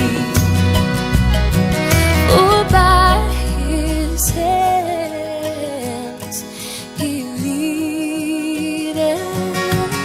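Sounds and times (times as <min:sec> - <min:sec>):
steady bass pulse: 0:00.0 - 0:04.7
guitar: 0:00.0 - 0:10.0
held melody note: 0:01.7 - 0:04.0.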